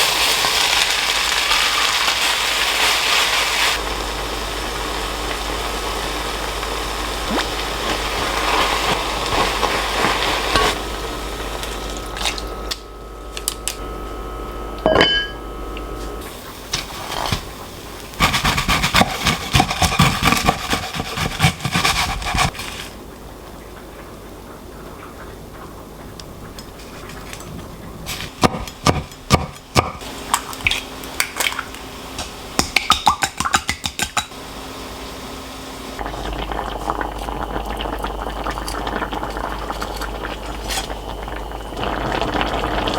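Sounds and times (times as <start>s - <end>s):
pots and dishes clattering: 14.8s - 15.4s.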